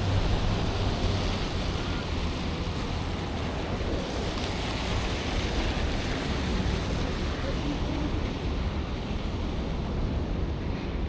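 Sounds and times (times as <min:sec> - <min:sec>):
city street traffic: 0:00.0 - 0:11.0.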